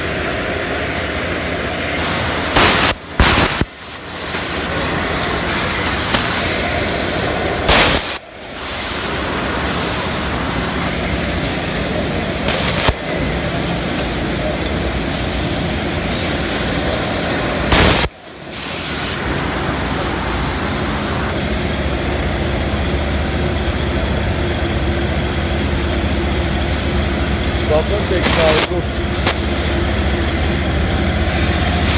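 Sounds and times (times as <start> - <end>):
winding machine running: 0.0 - 31.9
short bursts of hiss: 1.4 - 4.7, 5.4 - 10.4, 17.7 - 21.8, 28.2 - 30.6.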